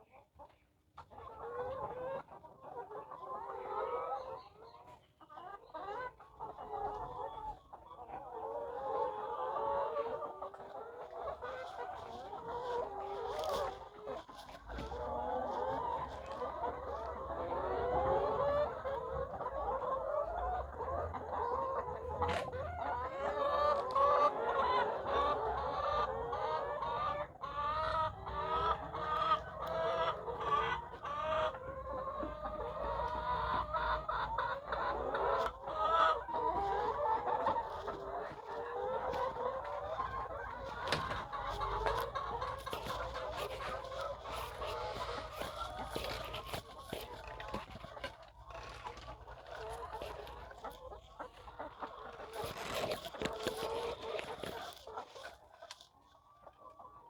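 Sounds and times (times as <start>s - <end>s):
hens clucking: 0.0s - 57.0s.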